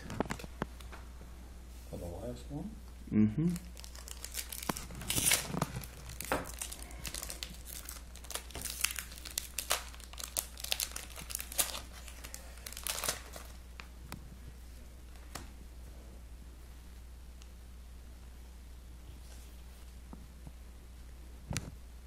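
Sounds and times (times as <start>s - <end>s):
foil wrapper tearing and crinkling: 3.6s - 13.6s.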